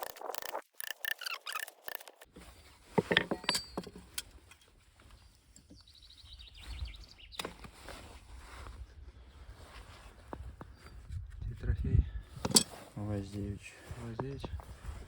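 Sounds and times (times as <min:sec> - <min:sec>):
rattle of high ticks: 0:00.0 - 0:02.2.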